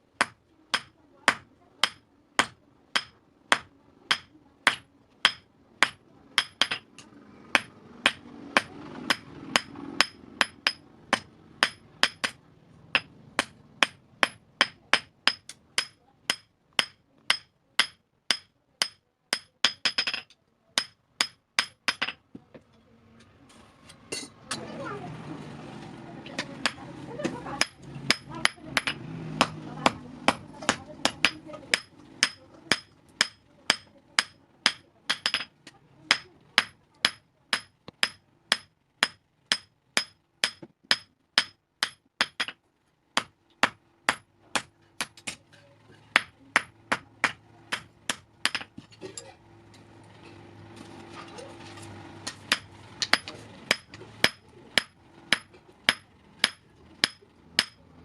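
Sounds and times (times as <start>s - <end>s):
hammer striking anvil: 0.2s - 6.8s, 7.5s - 22.2s, 27.6s - 35.5s, 36.1s - 42.6s, 46.1s - 49.2s, 52.2s - 57.8s.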